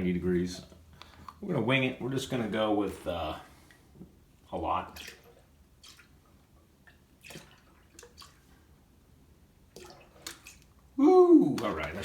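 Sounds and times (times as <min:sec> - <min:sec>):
liquid splashing and dripping: 0:04.4 - 0:08.9, 0:09.6 - 0:12.0.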